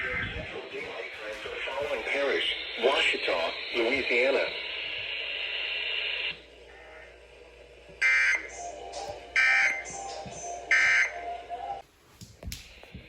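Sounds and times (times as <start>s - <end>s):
screechy data tone bursts: 1.6s - 6.9s.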